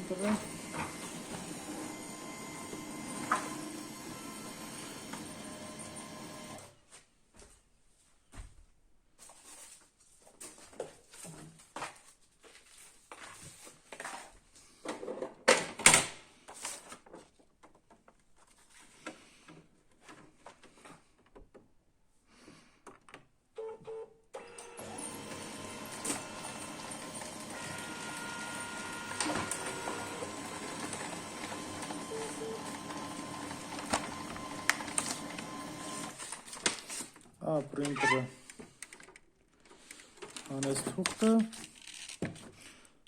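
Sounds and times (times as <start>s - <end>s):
printer gear and roller noise: 0.0s - 6.7s, 24.4s - 36.4s
printer motor hum: 0.0s - 6.7s, 24.4s - 36.2s
printer clicks and clunks: 24.4s - 36.4s.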